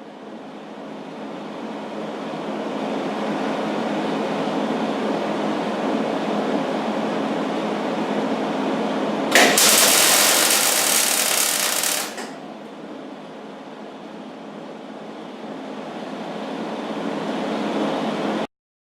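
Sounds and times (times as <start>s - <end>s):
welder arc crackling: 9.3s - 12.5s.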